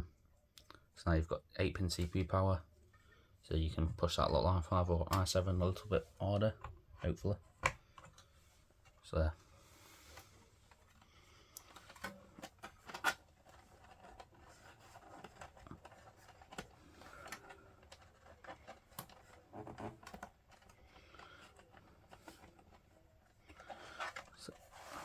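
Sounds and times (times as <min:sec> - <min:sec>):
cables and connectors being handled: 0:05.0 - 0:25.0.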